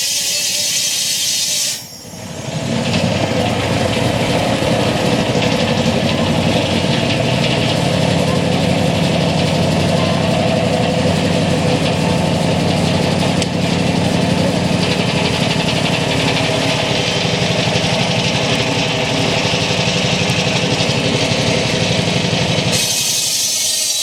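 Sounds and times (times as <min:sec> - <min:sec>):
steam hiss: 0:00.0 - 0:02.0, 0:22.7 - 0:24.0
steam engine mechanical beat: 0:00.0 - 0:24.0.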